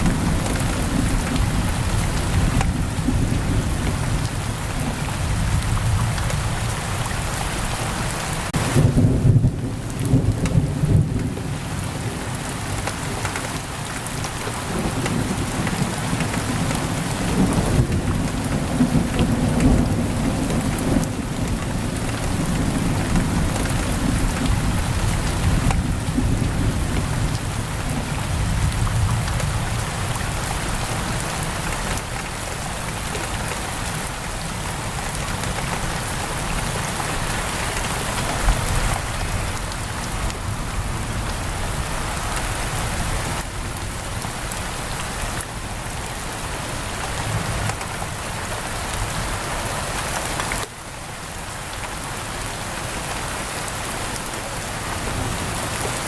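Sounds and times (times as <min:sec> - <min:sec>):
low rumble of thunder: 0:00.0 - 0:07.0, 0:08.6 - 0:12.7, 0:14.5 - 0:32.1
heavy rain on a window: 0:00.0 - 0:56.0.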